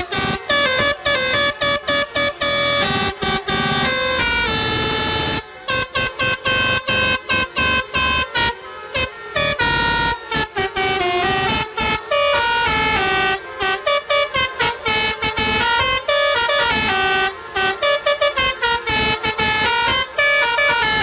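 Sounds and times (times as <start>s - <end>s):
musical air horn playing tune: 0.0s - 21.0s.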